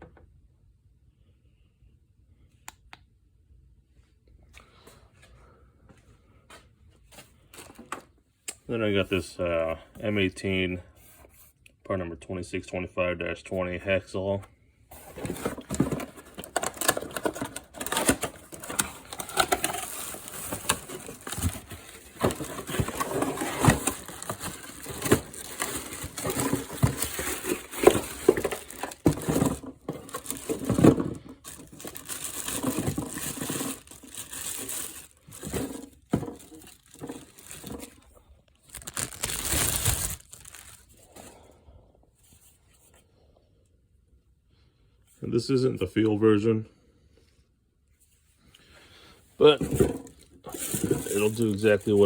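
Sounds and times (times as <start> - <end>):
plastic packaging crinkling: 15.0 - 41.1, 49.4 - 52.0.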